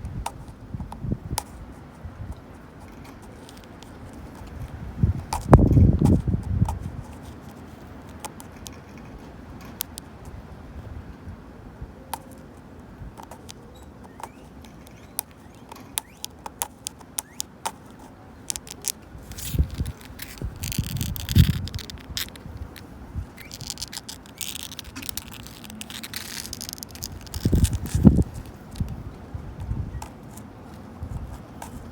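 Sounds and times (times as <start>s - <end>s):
fingernails tapping on wood: 13.2s - 18.9s
fingernails scratching wood: 13.2s - 29.0s.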